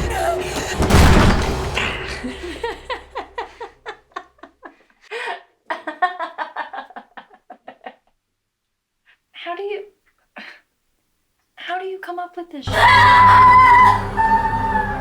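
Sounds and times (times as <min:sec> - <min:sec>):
loud boom: 0:00.5 - 0:03.2
person laughing: 0:01.8 - 0:08.1.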